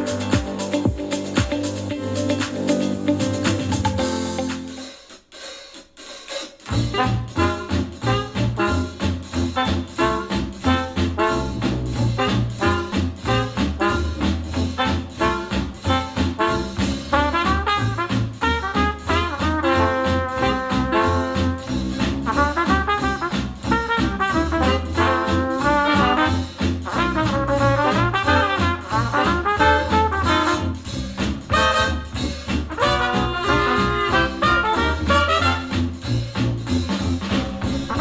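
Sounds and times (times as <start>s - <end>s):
jazz music from speaker: 0.0s - 5.3s, 6.6s - 38.0s.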